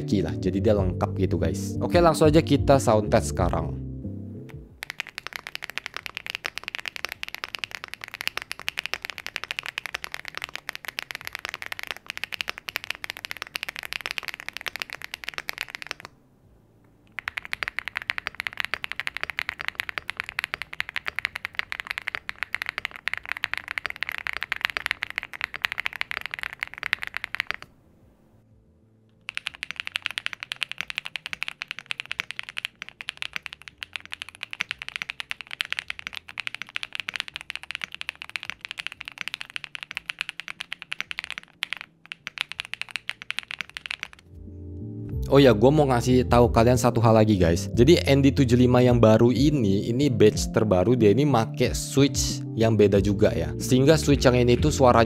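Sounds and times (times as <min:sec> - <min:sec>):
fast typing on mechanical keyboards: 0:04.8 - 0:16.1, 0:17.1 - 0:27.7, 0:29.2 - 0:44.3.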